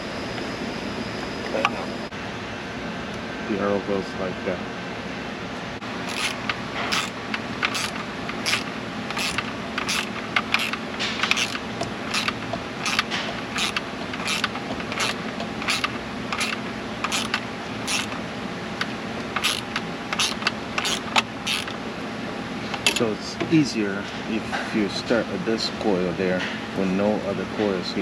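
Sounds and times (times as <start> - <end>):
steady low hum: 0.0 - 22.8
hand ratchet clicking: 6.1 - 18.2, 19.4 - 21.8.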